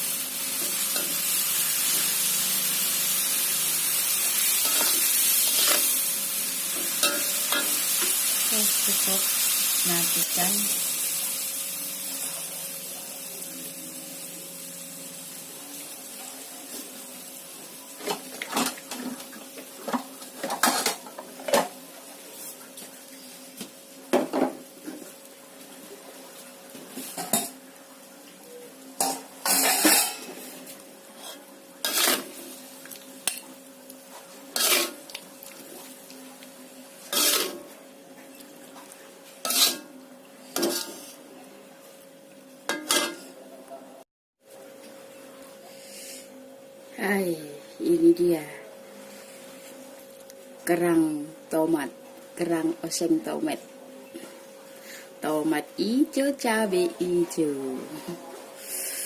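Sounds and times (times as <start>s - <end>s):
metal utensil scraping a pan: 4.4s - 6.0s, 6.8s - 8.2s, 29.0s - 30.5s, 31.2s - 32.4s, 34.5s - 35.0s, 37.0s - 37.7s, 39.4s - 39.9s, 40.5s - 41.2s, 42.7s - 43.3s.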